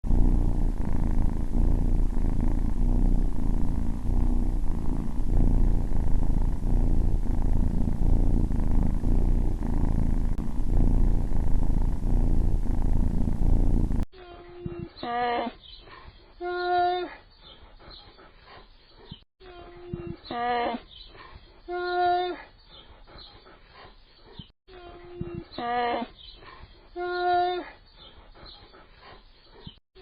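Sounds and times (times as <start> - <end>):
cat purring: 0.0 - 14.1.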